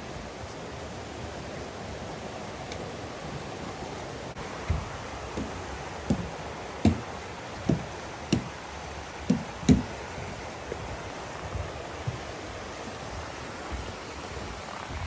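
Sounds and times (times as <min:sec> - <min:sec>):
steady rushing hiss: 0:00.0 - 0:15.0
footsteps on dirt trail: 0:04.4 - 0:15.0.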